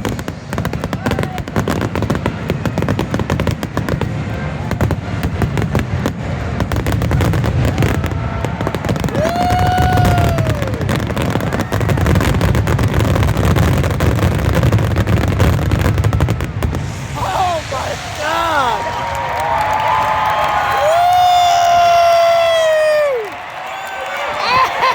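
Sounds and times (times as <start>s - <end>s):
fireworks bangs and crackles: 0.0s - 24.9s
low rumble: 15.9s - 21.0s
rising and falling tone: 16.3s - 22.0s.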